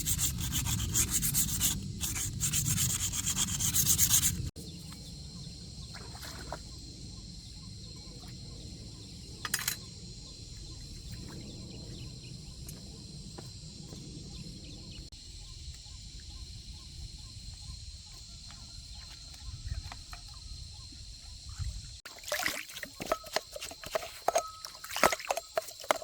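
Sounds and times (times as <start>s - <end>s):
hand sanding strokes: 0.0s - 4.5s.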